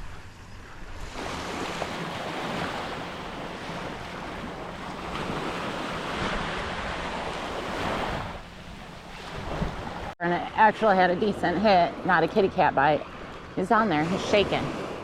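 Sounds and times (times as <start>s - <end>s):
wind rumbling on microphone: 0.0s - 10.2s.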